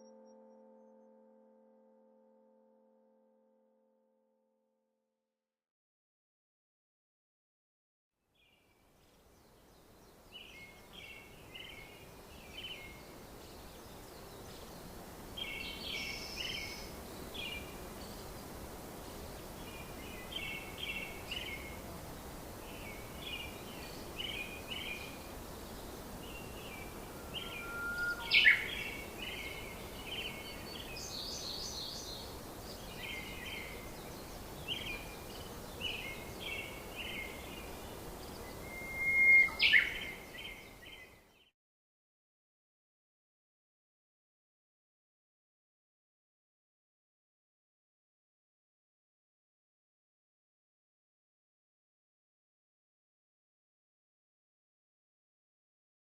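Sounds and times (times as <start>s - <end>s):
steady outdoor hiss: 8.3s - 41.5s
songbirds singing: 8.4s - 41.5s.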